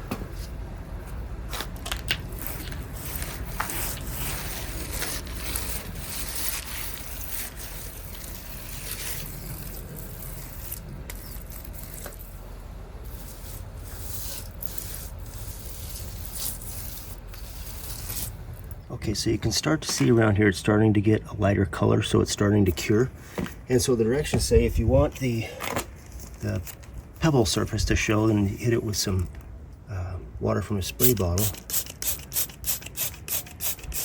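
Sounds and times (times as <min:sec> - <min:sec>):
hand tool scraping compound: 0:02.4 - 0:12.3, 0:13.1 - 0:18.4.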